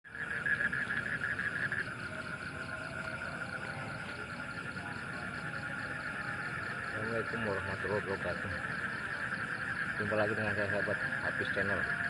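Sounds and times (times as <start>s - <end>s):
frogs trilling: 0.1s - 12.0s
insects: 0.1s - 12.0s.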